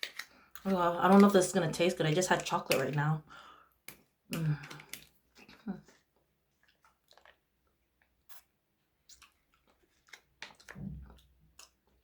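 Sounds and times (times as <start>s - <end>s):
wet mouth sounds eating: 4.3s - 12.0s.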